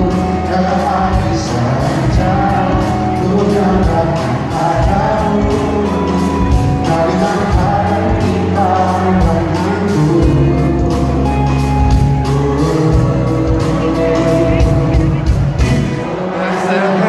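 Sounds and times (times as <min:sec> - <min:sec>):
live pop band music: 0:00.0 - 0:17.0.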